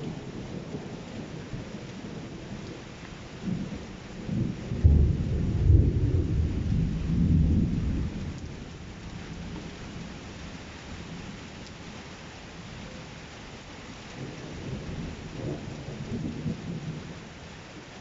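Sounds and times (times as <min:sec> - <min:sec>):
steady rain: 0:00.0 - 0:18.0
thunder rumbling: 0:03.4 - 0:08.7.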